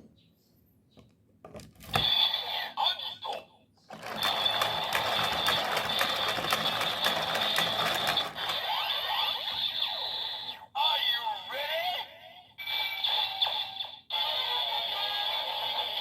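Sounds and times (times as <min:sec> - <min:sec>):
toy electronic sound effects: 0:02.0 - 0:10.7.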